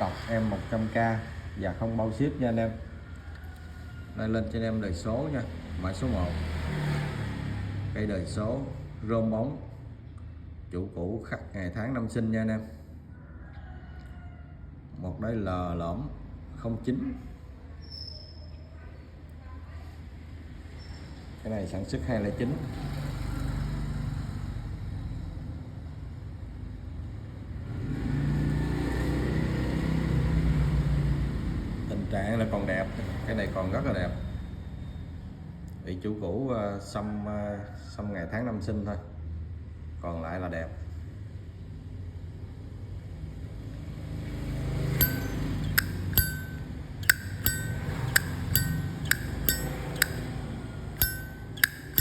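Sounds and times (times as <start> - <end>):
lighter lid clacking: 45.0 - 50.2, 51.0 - 52.0.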